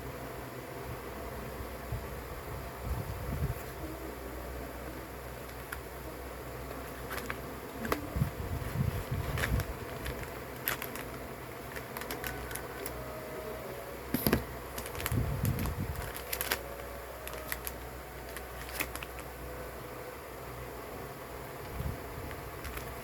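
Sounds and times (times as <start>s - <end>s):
packaging rustle: 6.6s - 13.2s, 14.1s - 19.4s, 21.7s - 23.0s
packaging clicks and taps: 9.4s - 13.0s, 14.2s - 19.3s, 22.3s - 23.0s.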